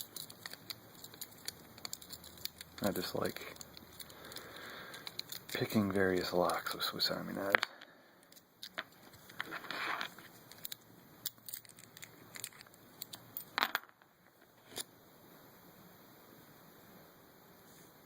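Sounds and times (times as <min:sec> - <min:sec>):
metal tool picking a padlock: 0:00.0 - 0:05.6, 0:10.5 - 0:13.5.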